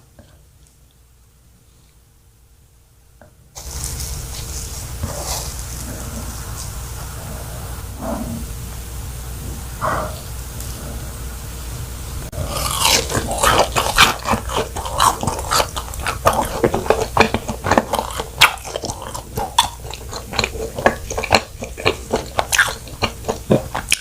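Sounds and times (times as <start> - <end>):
crunchy food chewing: 12.3 - 24.0.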